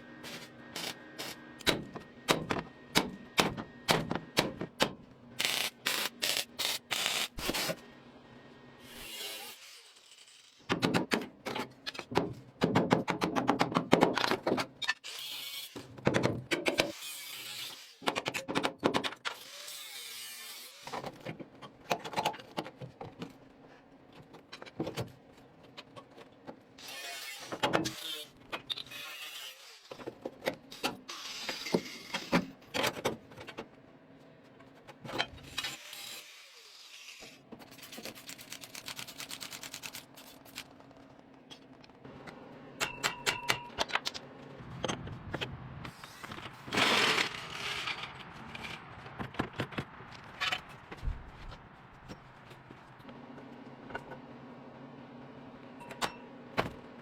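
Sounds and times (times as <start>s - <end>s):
hand tool clicks and knocks: 42.2s - 45.5s.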